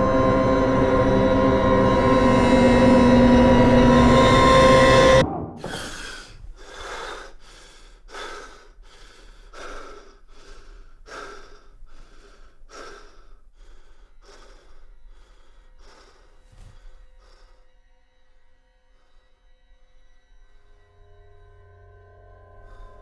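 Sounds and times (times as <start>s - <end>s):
loud music: 0.0s - 5.7s.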